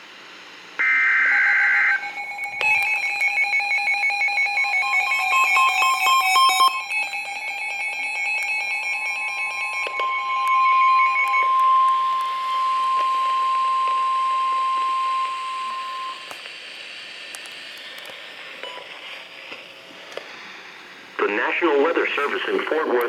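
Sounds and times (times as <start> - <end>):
steady alarm tone: 0.8 - 16.4
pulsing electronic beeping: 1.4 - 16.3.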